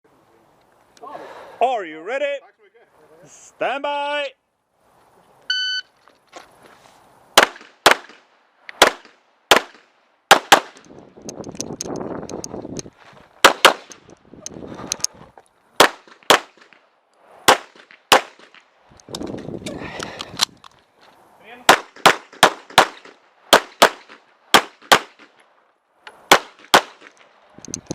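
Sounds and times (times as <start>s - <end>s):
scuffling movement: 6.0s - 7.1s, 12.5s - 13.4s
handgun shots: 13.4s - 13.9s, 21.7s - 25.3s.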